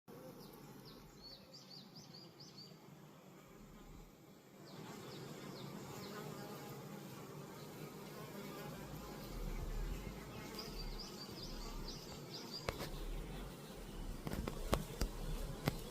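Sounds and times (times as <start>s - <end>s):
honeybees buzzing: 0.1s - 15.9s
small bird chirping: 9.2s - 15.9s.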